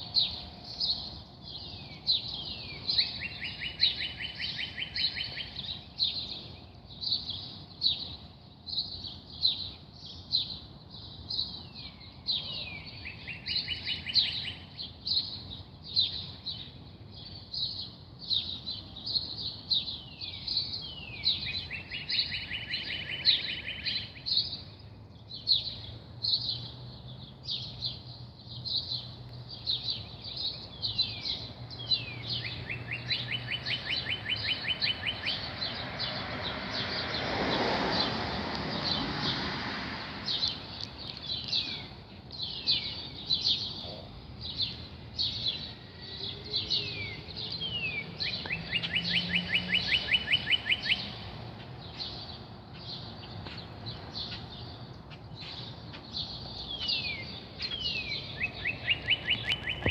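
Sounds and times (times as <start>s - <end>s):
songbirds chirping: 0.0s - 59.9s
broad rushing noise: 35.3s - 43.2s.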